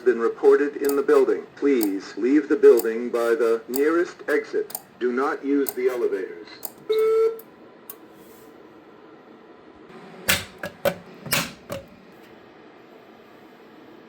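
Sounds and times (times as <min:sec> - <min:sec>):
faint steady hum: 0:00.0 - 0:14.0
sharp clicks and knocks: 0:00.8 - 0:01.1, 0:04.7 - 0:04.9, 0:10.3 - 0:12.0.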